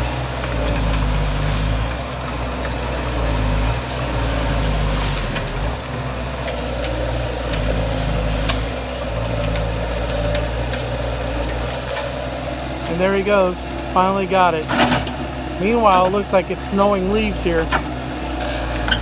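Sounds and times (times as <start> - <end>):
skid steer diesel engine running: 0.0 - 19.0.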